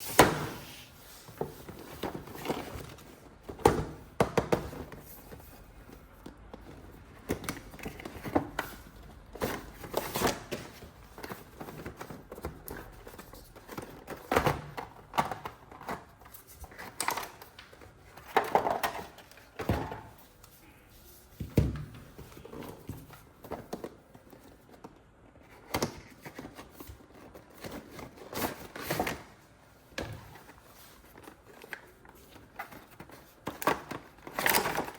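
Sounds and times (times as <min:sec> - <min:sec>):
plastic toys knocking and clicking: 0:01.5 - 0:20.2.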